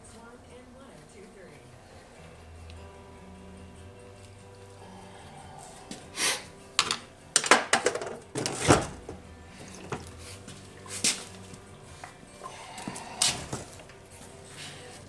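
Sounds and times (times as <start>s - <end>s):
tools and parts clattering: 6.8s - 11.6s.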